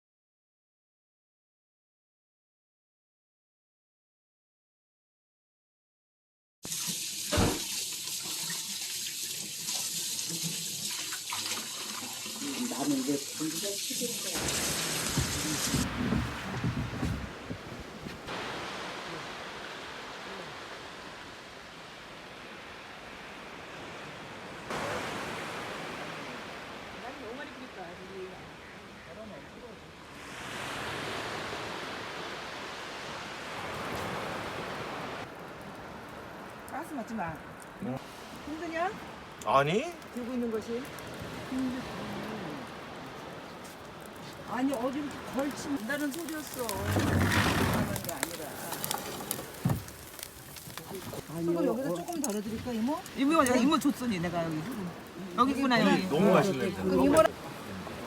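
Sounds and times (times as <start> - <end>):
beef sizzling on grill: 6.7 - 15.9, 43.6 - 57.3
dull thump: 7.3 - 7.7, 15.0 - 18.3, 48.9 - 50.8
waves washing on a beach: 9.3 - 58.0.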